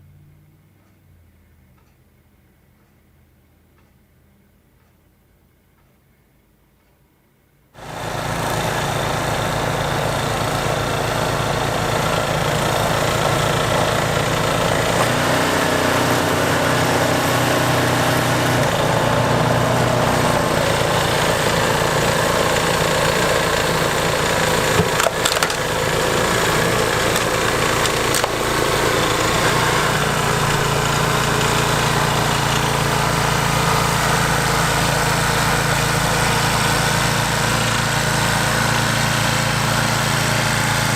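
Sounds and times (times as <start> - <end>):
snow blower engine running: 7.8 - 40.9.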